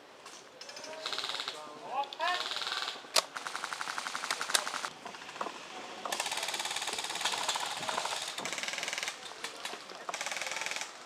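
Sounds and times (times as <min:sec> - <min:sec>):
airsoft guns firing full auto: 0:02.4 - 0:04.9, 0:10.1 - 0:10.9.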